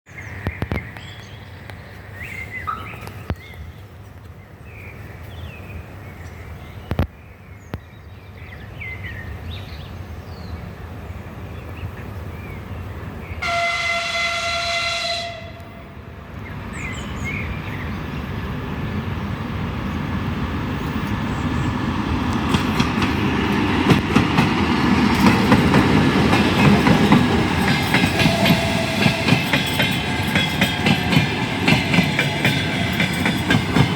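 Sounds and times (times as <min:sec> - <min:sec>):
locomotive horn blast: 0:13.4 - 0:15.9
diesel locomotive rumble: 0:18.1 - 0:33.9
wheels clacking over rail joints: 0:22.0 - 0:33.9.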